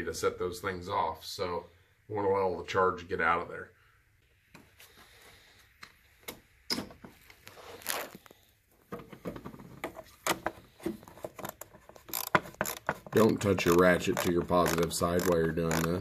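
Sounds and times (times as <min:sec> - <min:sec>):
socket ratchet clicking on metal: 0:11.4 - 0:16.0.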